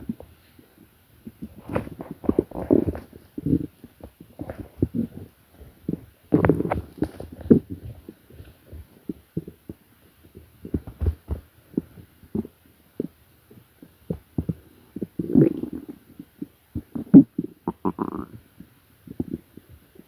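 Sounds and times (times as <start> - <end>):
stomach growling and gurgling: 1.2 - 9.8, 10.4 - 20.0.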